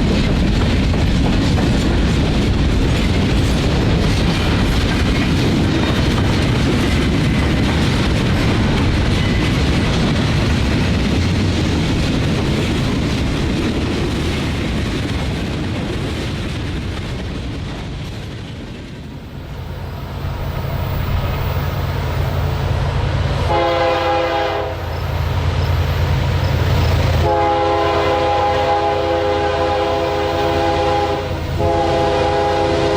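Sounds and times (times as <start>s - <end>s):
diesel locomotive engine droning: 0.0s - 32.9s
freight train rolling past: 0.0s - 32.9s
train chime air horn: 23.5s - 25.1s, 27.2s - 32.9s.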